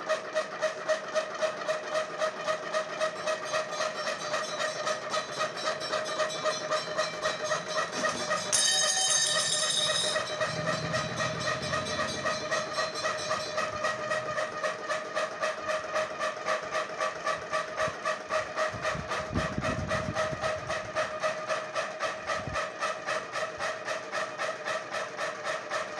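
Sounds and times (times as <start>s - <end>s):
sieve rattling: 7.0s - 10.8s.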